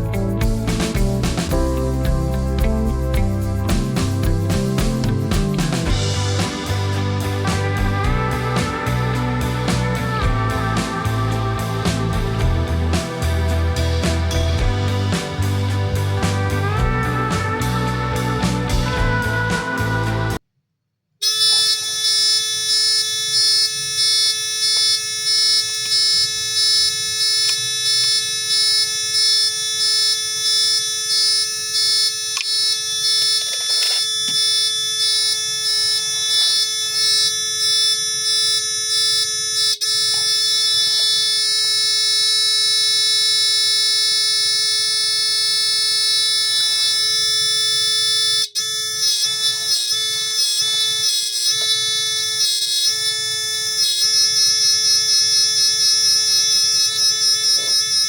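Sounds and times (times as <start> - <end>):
electronic buzzer tone: 21.2 - 58.0.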